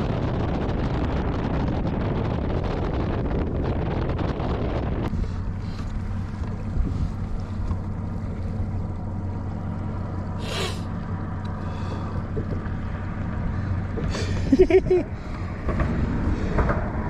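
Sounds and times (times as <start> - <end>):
rush of wind and water: 0.0 - 9.5
boat motor humming: 0.0 - 17.0
brief hiss: 10.4 - 10.9.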